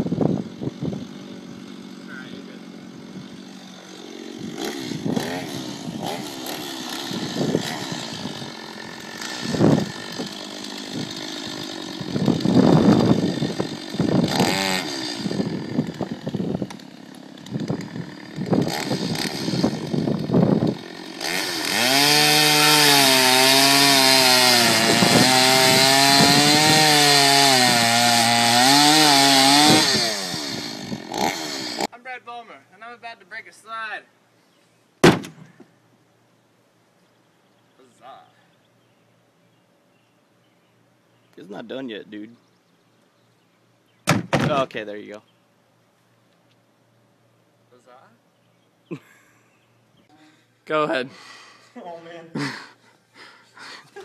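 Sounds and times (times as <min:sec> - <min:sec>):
chainsaw cutting into tree: 0:00.0 - 0:31.9.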